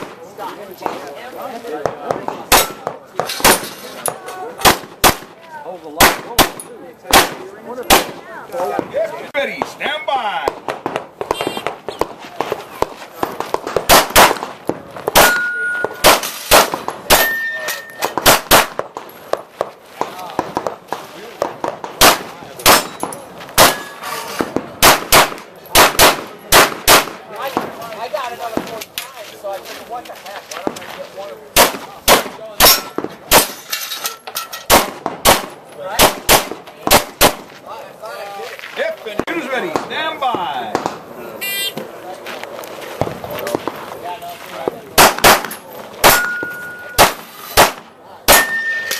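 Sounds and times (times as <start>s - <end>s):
pistol shots: 1.9s - 3.7s, 4.6s - 5.4s, 6.0s - 8.2s, 10.4s - 19.4s, 21.4s - 27.7s, 31.5s - 33.6s, 34.7s - 37.5s, 44.9s - 48.9s
steel targets ringing: 15.2s - 16.0s, 17.1s - 18.2s, 46.1s - 47.1s, 48.3s - 48.9s.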